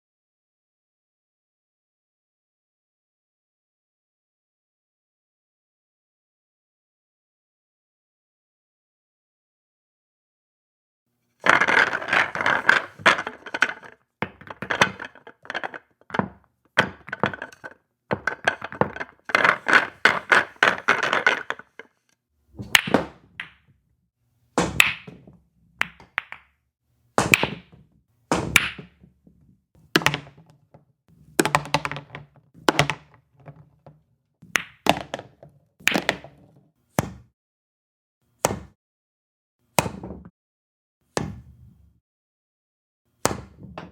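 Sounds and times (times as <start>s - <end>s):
billiard balls clacking: 11.4s - 22.0s, 22.6s - 23.8s, 24.6s - 26.6s, 27.2s - 37.2s.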